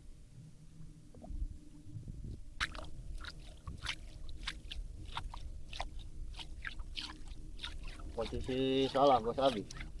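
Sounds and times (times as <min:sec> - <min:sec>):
low steady rumble: 0:00.0 - 0:10.0.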